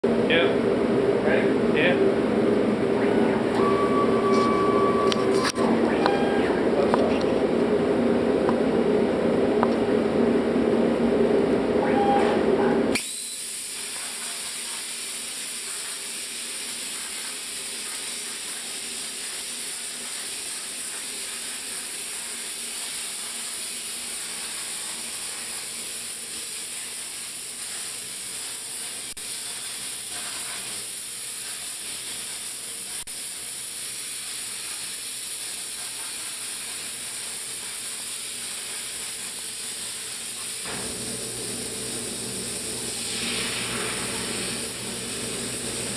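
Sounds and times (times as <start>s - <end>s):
low machine hum: 0.0s - 13.0s, 40.7s - 45.9s
plasma torch hissing: 13.0s - 45.9s.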